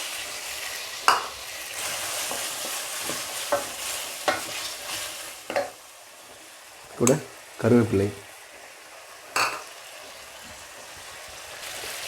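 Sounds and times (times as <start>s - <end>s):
vegetables sizzling in hot oil: 0.0s - 12.0s
spatula scraping a pan: 1.8s - 5.7s.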